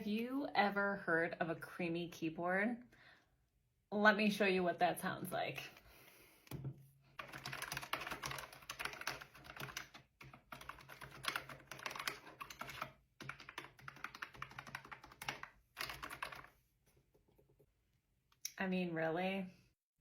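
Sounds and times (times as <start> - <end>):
fast keyboard typing: 7.1 - 16.5.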